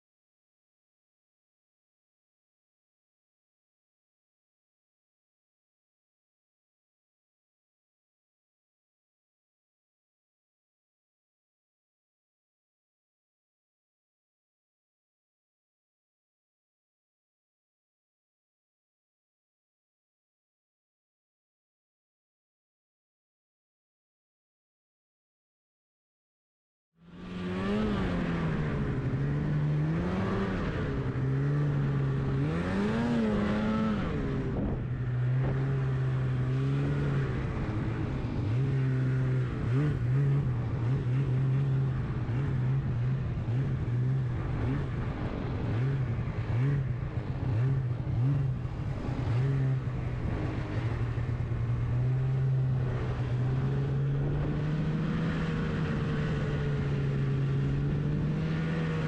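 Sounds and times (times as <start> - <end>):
snowmobile engine revving: 27.2 - 59.0.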